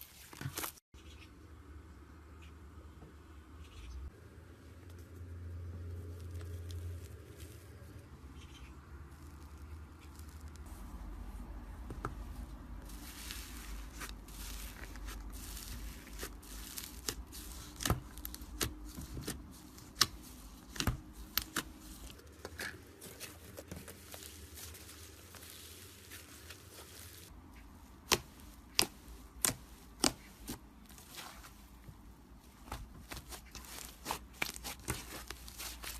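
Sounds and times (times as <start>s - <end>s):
slime crackling and popping: 13.0s - 22.7s, 28.0s - 31.4s, 32.6s - 35.9s.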